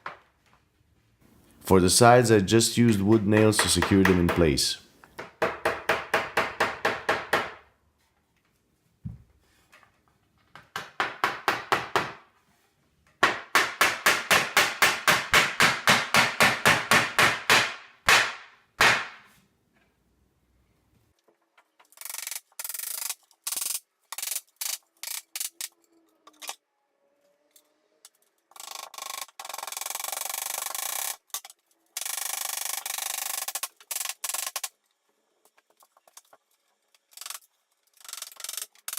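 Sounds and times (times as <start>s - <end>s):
hammer striking nails into wood: 3.1s - 4.4s, 5.2s - 7.6s, 10.5s - 12.3s, 13.2s - 19.3s.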